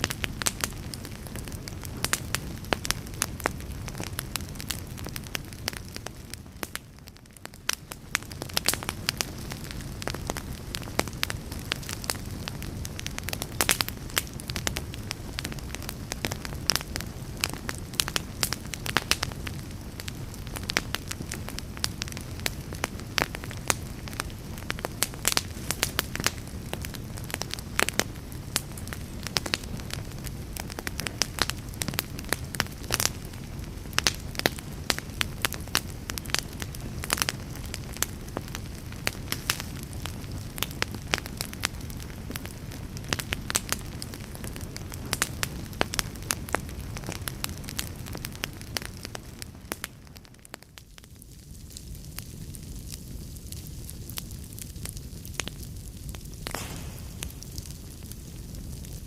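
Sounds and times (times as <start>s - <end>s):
log fire crackling and popping: 0.0s - 59.0s
low rumble of burning wood: 0.0s - 59.0s.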